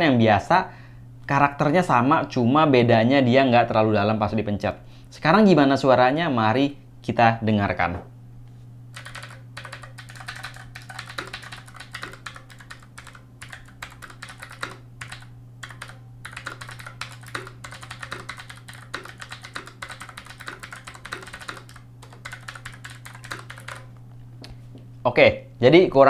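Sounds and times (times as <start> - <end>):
mechanical keyboard typing clicks: 9.0 - 24.0.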